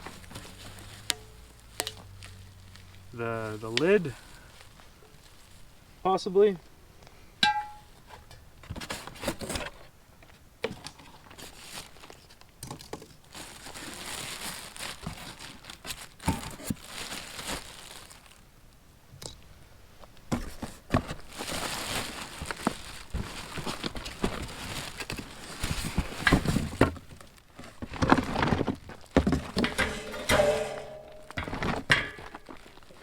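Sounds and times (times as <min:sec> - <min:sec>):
plastic wrap crinkling and tearing: 0:00.0 - 0:05.7, 0:11.2 - 0:18.5, 0:21.0 - 0:30.3, 0:31.2 - 0:33.0
clicks and knocks: 0:29.6 - 0:32.3.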